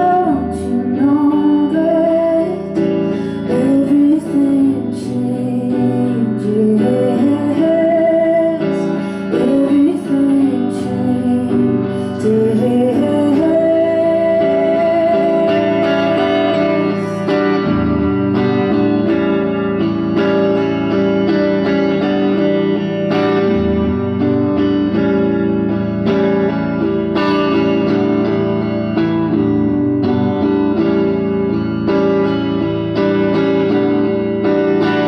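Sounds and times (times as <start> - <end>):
guitar strumming chords: 0.0 - 35.0.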